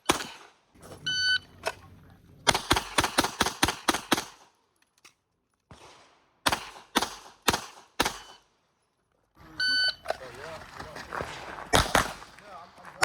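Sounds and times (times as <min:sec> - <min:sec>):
pistol shots: 0:00.0 - 0:00.6, 0:02.4 - 0:04.6, 0:05.7 - 0:08.4, 0:11.3 - 0:12.4.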